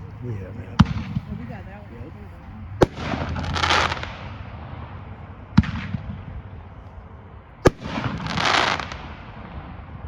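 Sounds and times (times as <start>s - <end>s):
firework bangs: 0.0s - 2.2s, 2.8s - 6.7s, 7.6s - 10.0s
firework crackling hiss: 2.8s - 4.3s, 7.7s - 9.2s.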